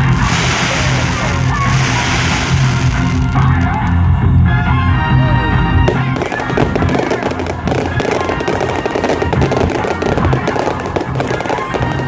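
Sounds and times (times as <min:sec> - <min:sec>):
fireworks crackling: 0:00.0 - 0:03.3, 0:05.9 - 0:12.0.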